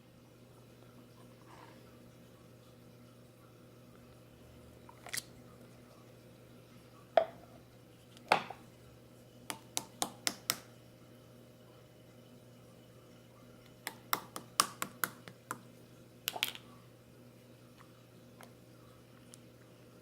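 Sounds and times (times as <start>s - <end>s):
faint steady hum: 0.0s - 20.0s
small objects clicking and tapping: 16.3s - 16.6s.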